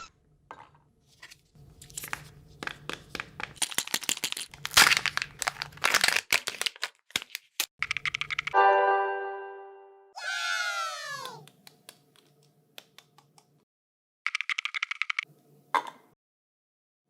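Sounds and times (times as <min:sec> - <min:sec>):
candy wrapper crinkling and tearing: 0:03.1 - 0:07.7.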